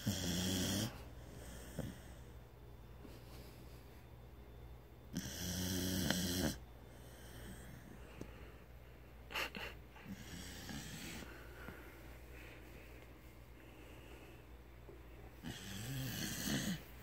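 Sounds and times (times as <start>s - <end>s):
rattling snore: 5.2s - 6.6s, 15.4s - 16.9s
faint breathing: 6.8s - 17.0s.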